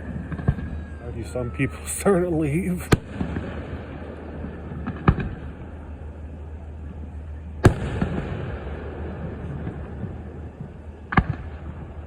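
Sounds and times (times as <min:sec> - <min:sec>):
fireworks bangs: 0:00.0 - 0:06.3, 0:07.5 - 0:12.0
steady low hum: 0:00.0 - 0:12.0.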